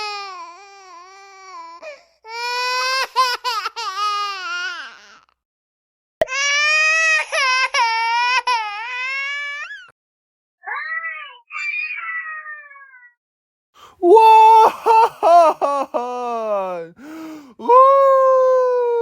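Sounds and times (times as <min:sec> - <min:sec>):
high-pitched cartoon crying: 0:10.8 - 0:13.2, 0:14.0 - 0:17.0.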